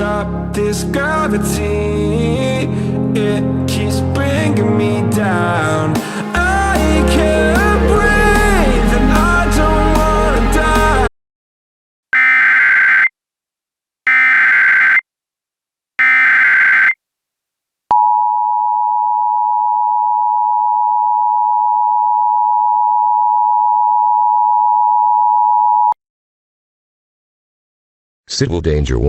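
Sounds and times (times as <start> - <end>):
two-tone alarm: 12.2 - 13.1, 14.1 - 15.0, 16.0 - 17.0.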